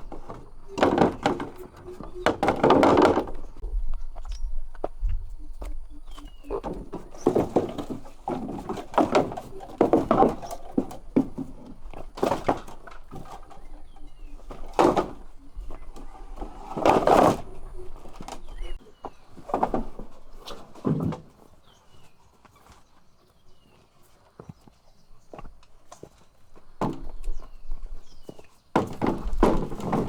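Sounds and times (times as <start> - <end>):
knocks and clatter: 0.0 - 3.7, 6.4 - 18.8, 28.8 - 30.0
faint bird chirps: 3.4 - 7.3.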